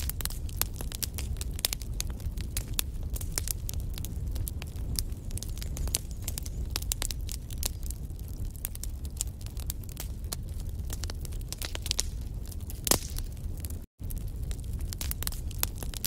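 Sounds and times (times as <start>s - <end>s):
fire crackling and popping: 0.0s - 16.0s
low rumble of flame: 0.0s - 16.0s.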